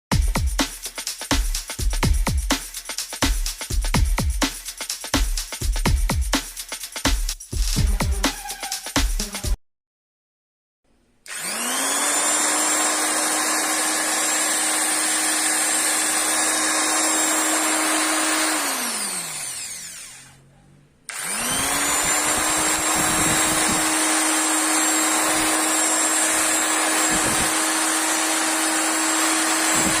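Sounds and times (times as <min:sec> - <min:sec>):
electric drill whining: 0:11.3 - 0:20.4, 0:21.1 - 0:30.0.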